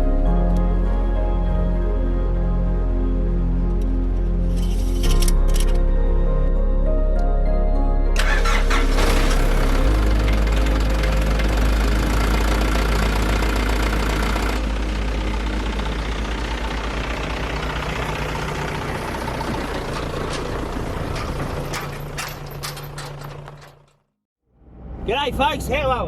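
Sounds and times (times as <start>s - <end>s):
vehicle engine idling: 8.2s - 24.1s.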